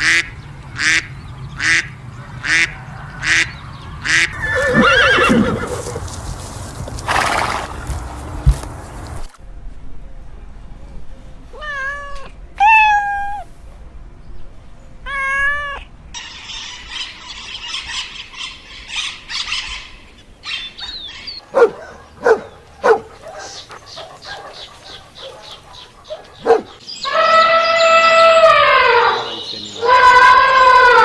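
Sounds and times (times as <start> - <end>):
cat meowing: 11.6 - 13.5, 15.0 - 15.9.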